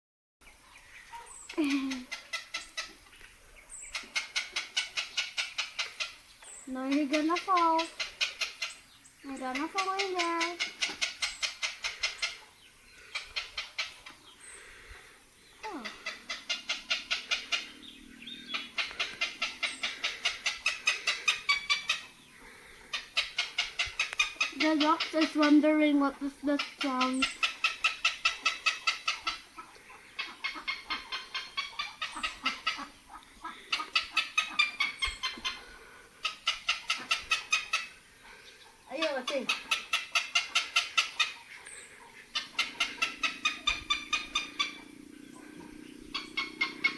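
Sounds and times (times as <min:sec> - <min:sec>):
heron clucking calls: 0:00.9 - 0:46.9.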